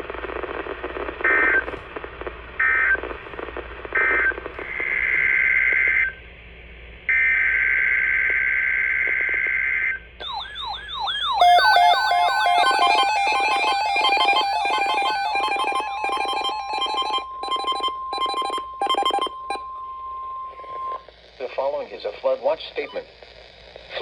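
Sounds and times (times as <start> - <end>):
siren-like electronic tones: 10.2 - 21.0
stepped synthesized tone pattern: 11.4 - 19.6
buzzing data tone bursts: 11.4 - 19.8.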